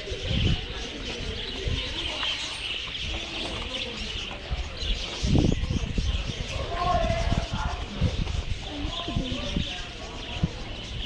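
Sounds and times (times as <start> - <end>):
small birds chirping: 0.0 - 11.0
low bumps: 2.2 - 4.4.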